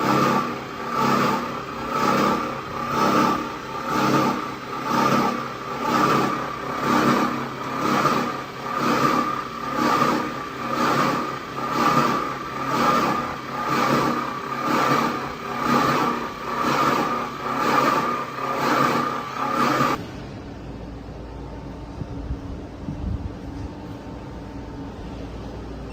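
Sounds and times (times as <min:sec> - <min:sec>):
rough mechanical scraping: 0:00.0 - 0:20.0.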